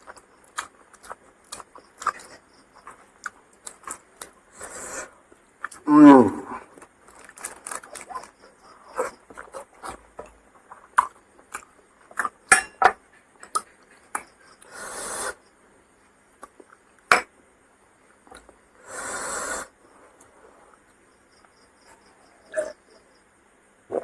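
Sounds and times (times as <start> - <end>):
wet chewing clicks and smacks: 0.0 - 4.4, 9.1 - 12.5, 13.3 - 14.4.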